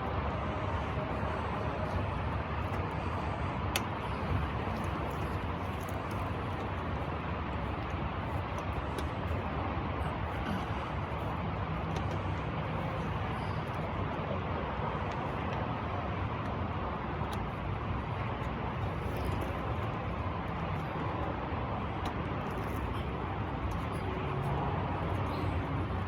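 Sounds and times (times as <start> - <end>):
vehicle noise with low hum: 0.0 - 26.0.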